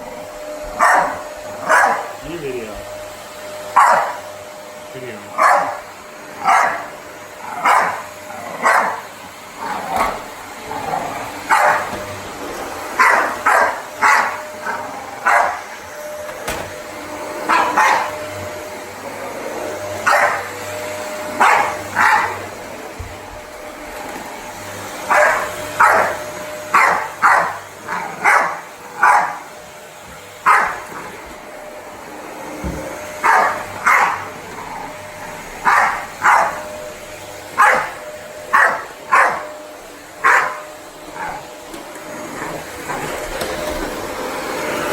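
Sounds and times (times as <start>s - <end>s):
vacuum cleaner running: 0.0s - 44.9s
dog barking: 0.8s - 2.1s, 3.8s - 4.2s, 5.4s - 5.8s, 6.4s - 6.9s, 7.6s - 8.0s, 8.6s - 9.0s, 11.5s - 12.0s, 13.0s - 15.6s, 17.5s - 18.1s, 20.0s - 20.5s, 21.4s - 22.4s, 25.1s - 29.4s, 30.4s - 30.8s, 33.2s - 34.3s, 35.6s - 36.6s, 37.6s - 39.5s, 40.2s - 41.4s.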